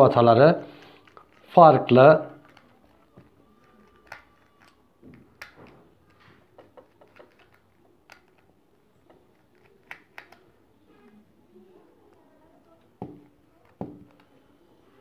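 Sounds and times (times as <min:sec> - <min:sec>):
screwdriver clicks and taps: 0:02.4 - 0:10.4.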